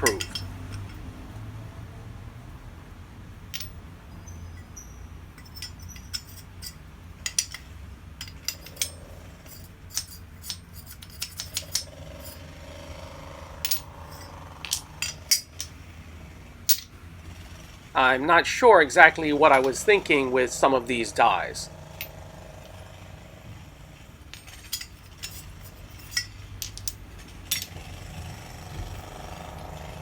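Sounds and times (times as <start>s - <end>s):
sharp metal clicks and clinks: 0.0s - 1.1s, 3.5s - 12.5s, 13.6s - 15.8s, 24.3s - 27.8s
low background hum: 0.0s - 30.0s.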